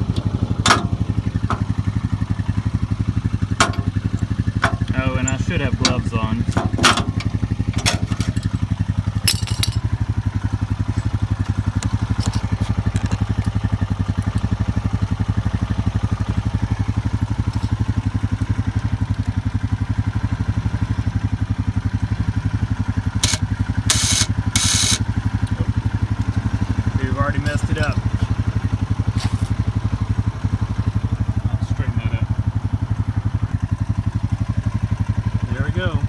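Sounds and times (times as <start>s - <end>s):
clicks and scraping rattles: 0.0s - 1.8s, 3.5s - 10.1s, 10.8s - 14.6s, 23.2s - 25.5s
quad bike engine idling: 0.0s - 36.0s.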